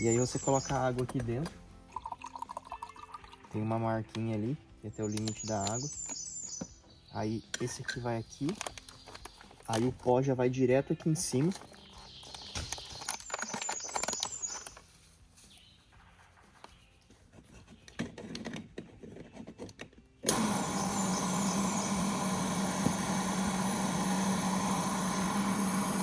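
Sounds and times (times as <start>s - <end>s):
gas stove burner hissing: 20.3s - 26.0s.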